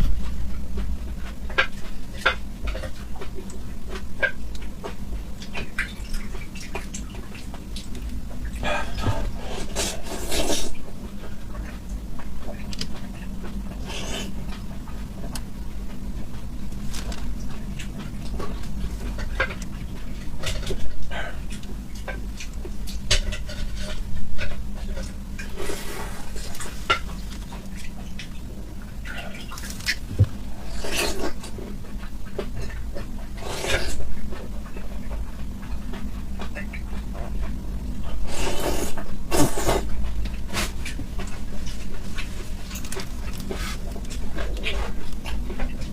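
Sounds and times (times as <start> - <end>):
chewing and wet mouth noises: 0.0 - 45.9
noisy slurping: 8.5 - 10.8, 23.3 - 31.9, 32.6 - 34.2, 36.4 - 45.9.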